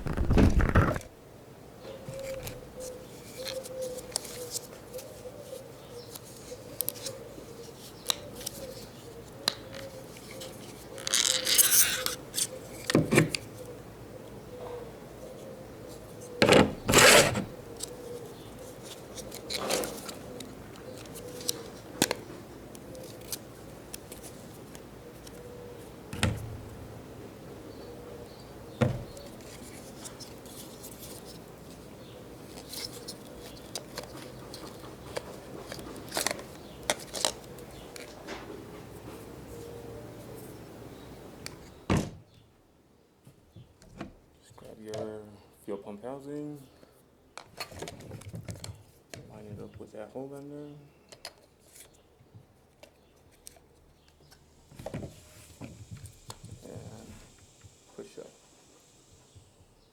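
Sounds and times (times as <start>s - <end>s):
hand tools clicking and scraping: 16.8s - 17.5s.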